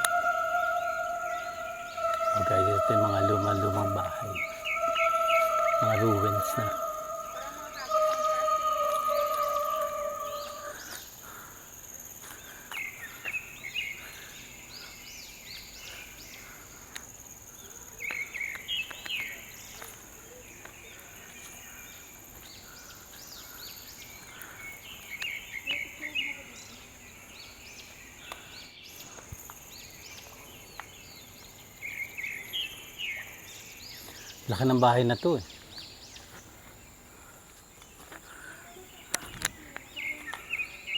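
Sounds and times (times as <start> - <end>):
birds chirping: 0.0 - 11.0
high-pitched insect drone: 0.0 - 11.0.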